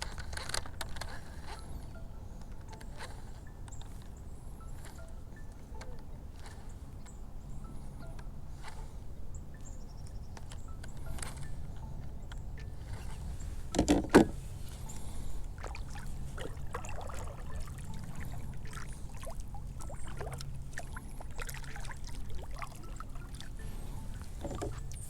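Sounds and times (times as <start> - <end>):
small clicks: 0.0 - 8.9, 9.5 - 15.1
low rumble of handling noise: 0.0 - 25.0
light water sounds: 12.6 - 25.0.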